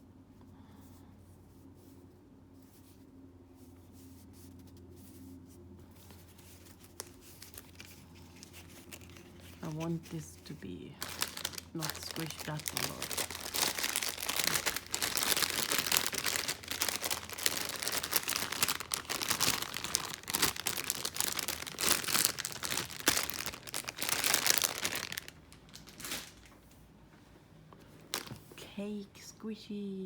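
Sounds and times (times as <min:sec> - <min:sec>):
toys crinkling and rustling: 0:06.4 - 0:26.8, 0:27.8 - 0:28.6.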